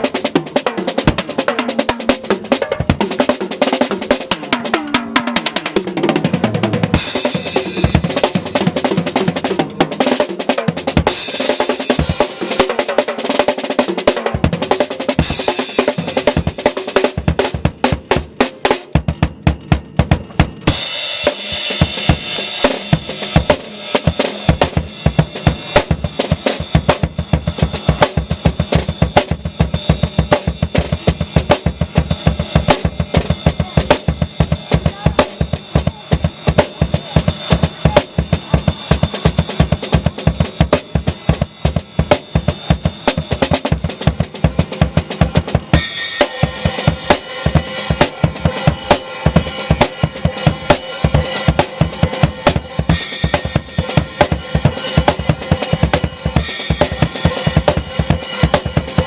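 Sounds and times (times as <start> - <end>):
snare drum: 0.0 - 59.0
bass drum: 14.3 - 59.0.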